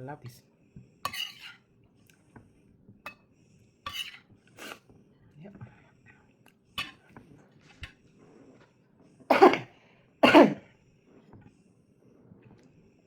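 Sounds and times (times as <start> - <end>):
person coughing: 9.3 - 10.6.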